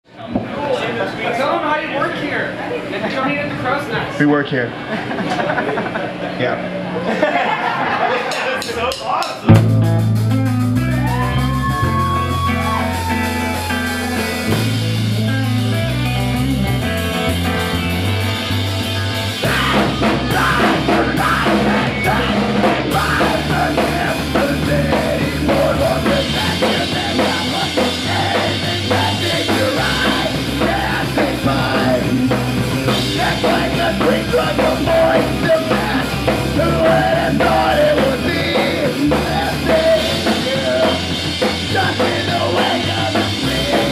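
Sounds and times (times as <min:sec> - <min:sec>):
punk rock band playing live: 0:07.4 - 0:43.9
bass line: 0:09.5 - 0:43.9.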